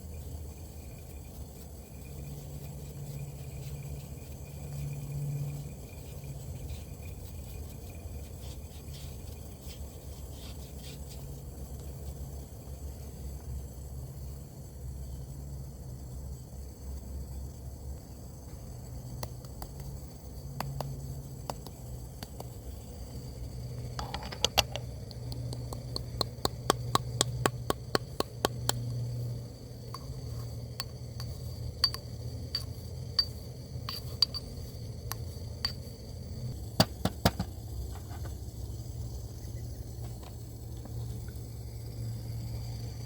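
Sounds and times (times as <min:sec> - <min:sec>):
low steady rumble: 0:00.0 - 0:43.0
cups and utensils clinking: 0:23.8 - 0:29.0, 0:29.9 - 0:35.9.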